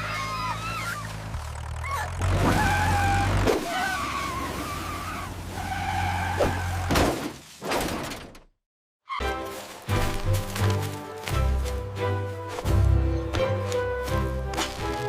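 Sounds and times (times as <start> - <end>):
vehicle engine running: 0.0 - 4.2.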